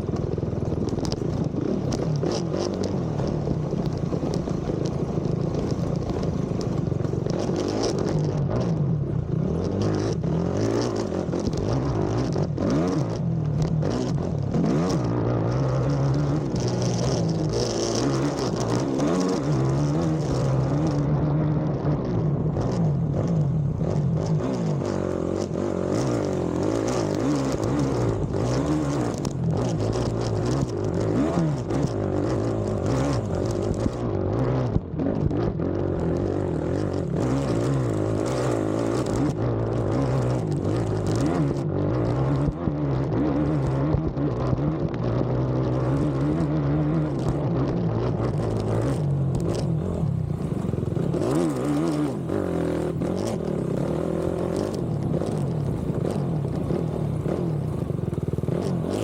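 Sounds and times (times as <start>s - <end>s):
atv engine revving: 0.0s - 59.0s.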